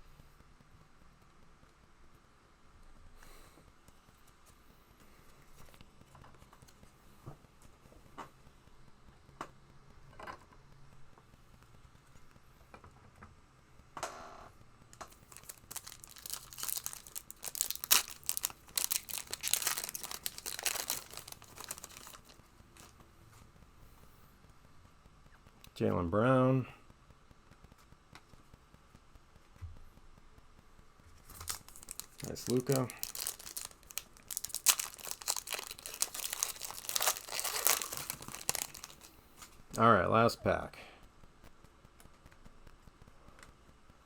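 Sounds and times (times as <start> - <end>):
foil wrapper crinkling and tearing: 15.0 - 22.9, 31.2 - 39.6
trading cards clicking: 31.3 - 39.1.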